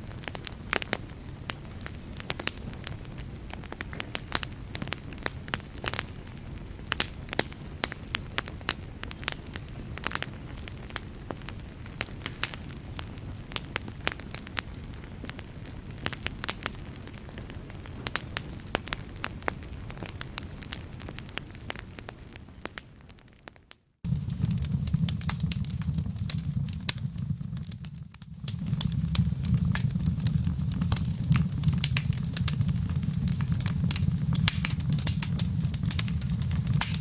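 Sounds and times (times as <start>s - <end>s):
wood fire crackling and popping: 0.0s - 37.0s
low steady rumble: 24.1s - 37.0s.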